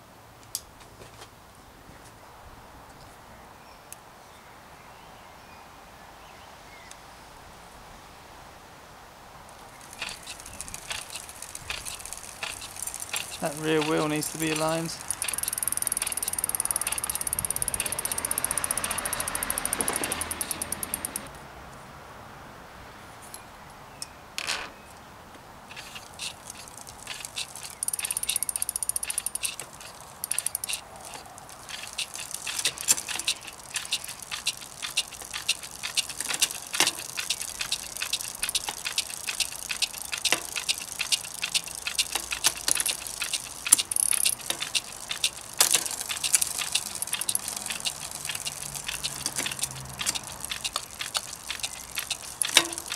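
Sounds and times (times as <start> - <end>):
bicycle freewheel ticking: 9.6 - 21.3, 25.7 - 52.9
sharp clicks and knocks: 9.8 - 21.3, 25.7 - 52.9.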